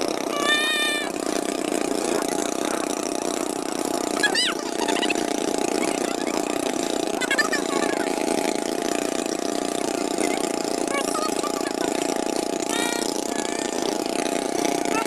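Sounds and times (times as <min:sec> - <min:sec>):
motorboat engine droning: 0:00.0 - 0:15.0
high-pitched cries: 0:00.3 - 0:01.2, 0:04.2 - 0:06.5, 0:12.7 - 0:13.8.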